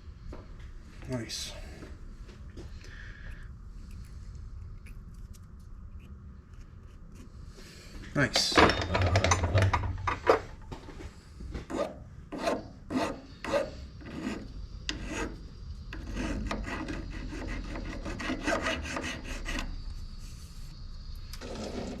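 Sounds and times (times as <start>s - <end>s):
rasping scraping strokes: 11.5s - 20.7s, 21.4s - 22.0s.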